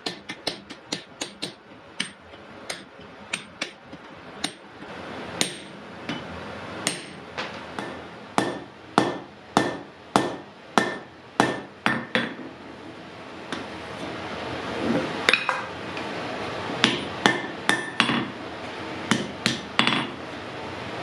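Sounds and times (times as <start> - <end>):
hammer striking iron on anvil: 0.0 - 4.7, 5.4 - 12.4, 16.8 - 18.4, 19.1 - 20.2.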